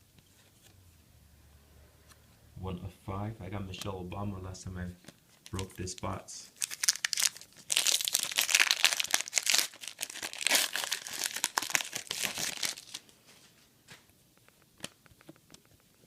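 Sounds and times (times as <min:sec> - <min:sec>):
foil wrapper crinkling and tearing: 0:06.6 - 0:13.1.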